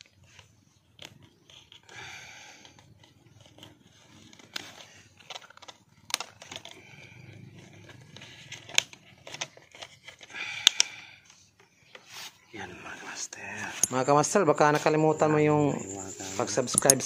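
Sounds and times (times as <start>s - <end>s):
plastic bottle clicking and crinkling: 2.6s - 7.0s.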